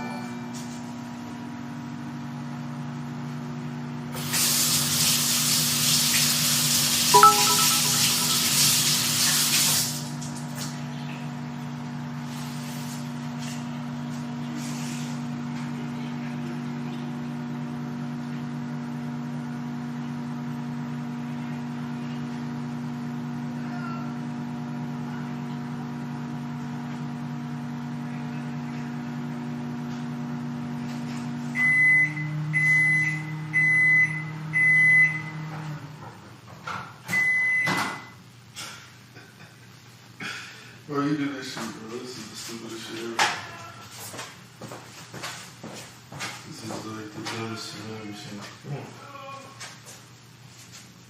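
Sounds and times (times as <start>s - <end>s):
high microwave beeps: 0.0s - 1.0s, 7.1s - 9.1s, 31.5s - 35.5s, 37.1s - 38.3s
microwave oven humming: 0.0s - 51.0s.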